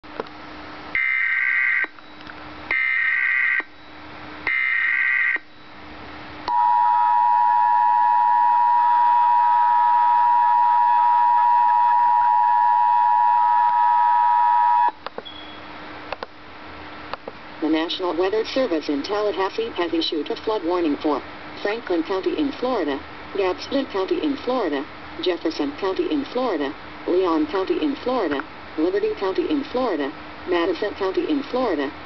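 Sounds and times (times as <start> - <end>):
two-tone attention signal: 6.5 - 15.7.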